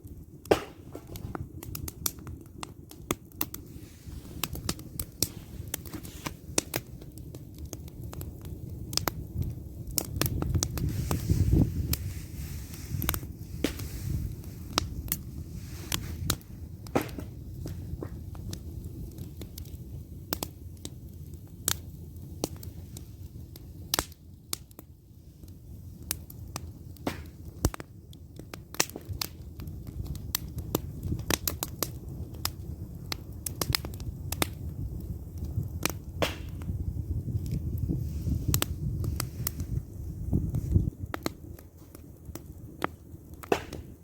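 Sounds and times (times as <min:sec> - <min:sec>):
campfire wood crackling and popping: 0:00.0 - 0:44.0
low steady rumble: 0:00.1 - 0:26.5.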